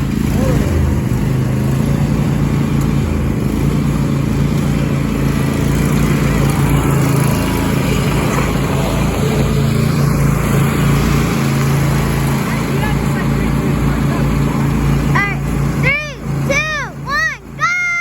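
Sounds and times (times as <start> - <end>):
riding lawn mower engines running: 0.0 - 18.0.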